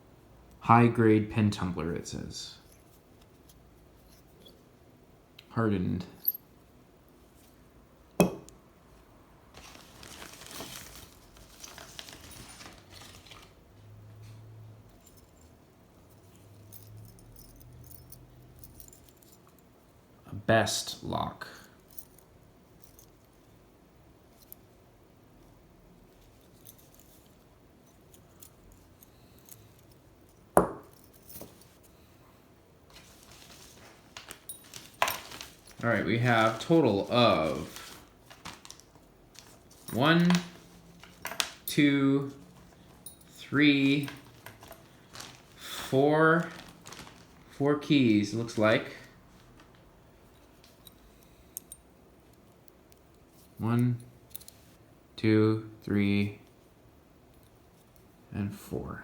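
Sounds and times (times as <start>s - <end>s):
bag rustling: 9.5s - 13.6s, 32.9s - 41.7s, 42.3s - 48.6s
light metal clinks: 14.9s - 19.7s, 39.9s - 44.8s.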